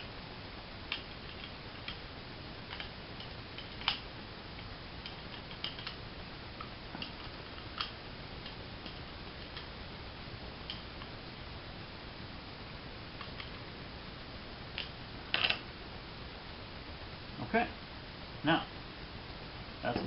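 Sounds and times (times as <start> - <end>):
faint steady hiss: 0.0 - 20.0.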